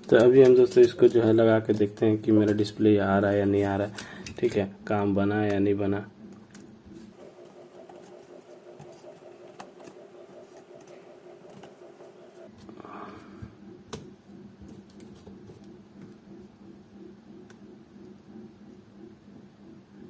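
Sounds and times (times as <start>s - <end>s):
steady low hum: 0.0s - 20.0s.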